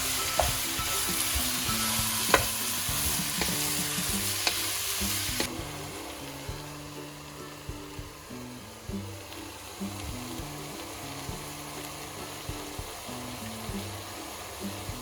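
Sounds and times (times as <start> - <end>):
food sizzling in a hot pan: 0.0 - 15.0
utensil knocking against pan: 0.2 - 5.6.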